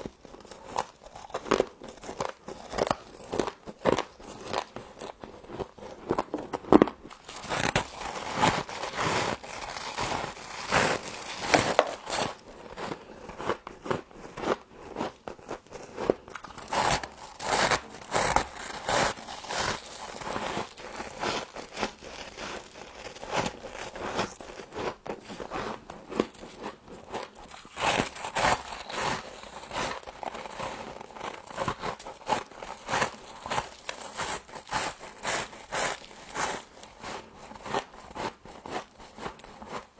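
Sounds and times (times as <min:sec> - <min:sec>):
crunching frost: 0:16.7 - 0:25.4.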